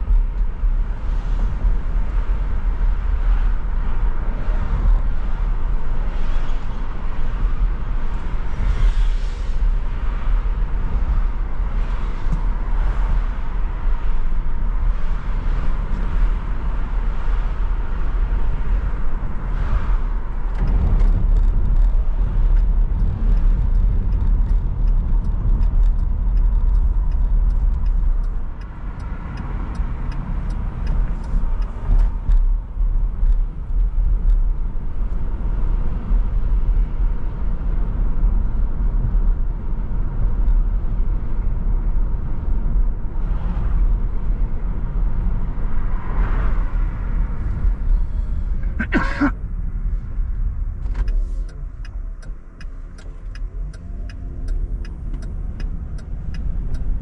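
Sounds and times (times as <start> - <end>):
car road and engine rumble: 0.0 - 57.0
light regular ticking: 20.6 - 32.5, 50.9 - 57.0.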